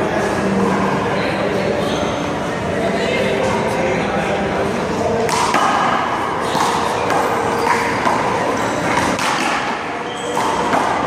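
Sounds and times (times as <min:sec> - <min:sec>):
handball hitting a wall: 0:08.9 - 0:11.0.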